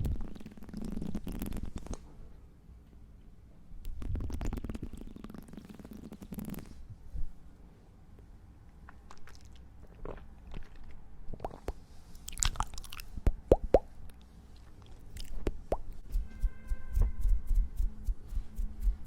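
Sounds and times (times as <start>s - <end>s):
soft crackles and clicks: 0.0s - 2.1s.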